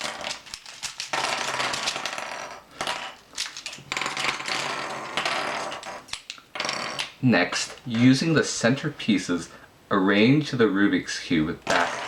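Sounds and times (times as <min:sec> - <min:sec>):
plastic cube pieces clicking: 0:00.0 - 0:06.4.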